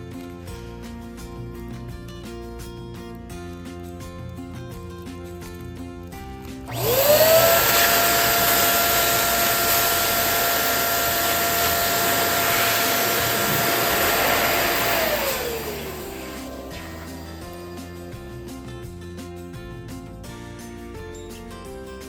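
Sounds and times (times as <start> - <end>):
electric balloon inflator motor: 6.7 - 18.3.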